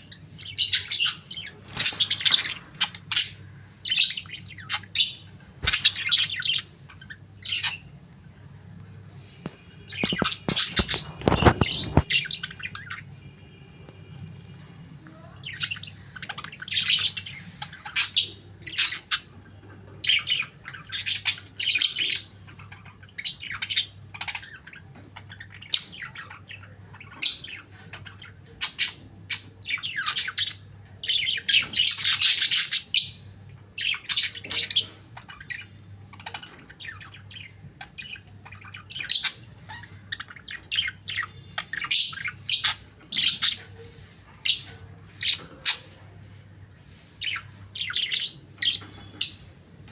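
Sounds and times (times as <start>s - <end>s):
budgerigar chirping and squawking: 0.0s - 8.0s, 9.9s - 13.1s, 20.1s - 43.7s.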